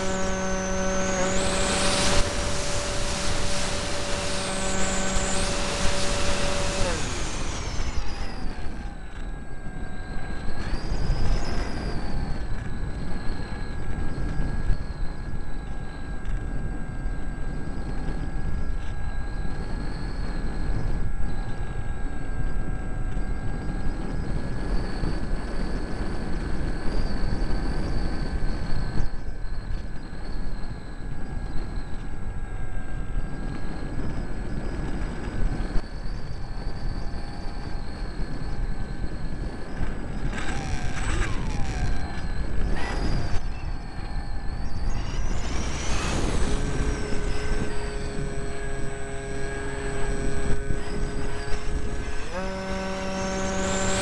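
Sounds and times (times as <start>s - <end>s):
heavy wind rush: 0.0s - 15.5s, 30.2s - 54.0s
electric motor and propeller whine: 0.0s - 54.0s.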